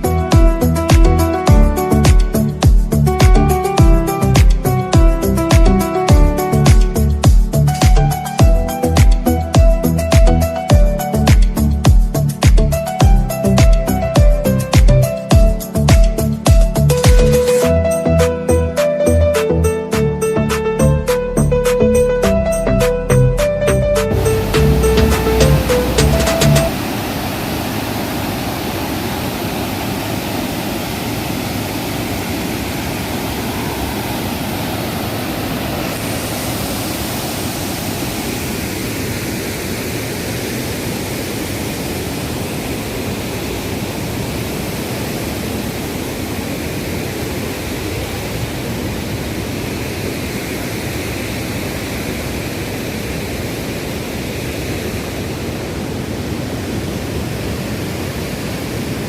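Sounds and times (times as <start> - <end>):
waterfall rushing: 24.0 - 59.0.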